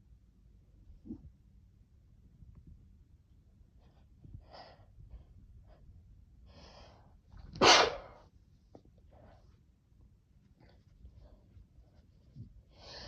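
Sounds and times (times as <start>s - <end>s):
person sneezing: 7.6s - 8.2s.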